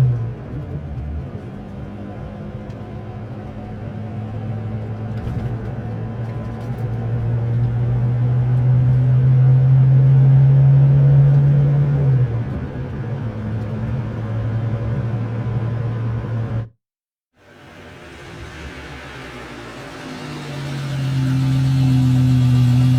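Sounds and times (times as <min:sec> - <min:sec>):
car engine passing by: 0:17.4 - 0:22.9.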